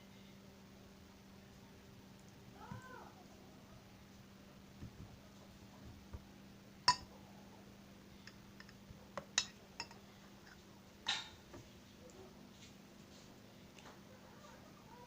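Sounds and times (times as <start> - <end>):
faint steady hum: 0.0 - 15.0
utensil clinking against a dish: 6.9 - 7.1, 8.2 - 11.4.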